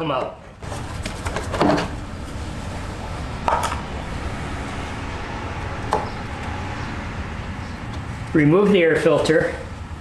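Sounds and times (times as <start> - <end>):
plastic cover clattering: 0.6 - 2.0.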